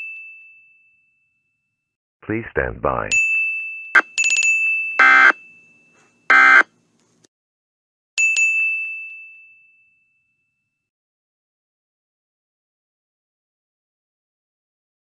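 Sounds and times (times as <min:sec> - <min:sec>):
harsh buzzer blasts: 0:05.0 - 0:05.4, 0:06.3 - 0:06.7
bell dings: 0:08.2 - 0:10.9.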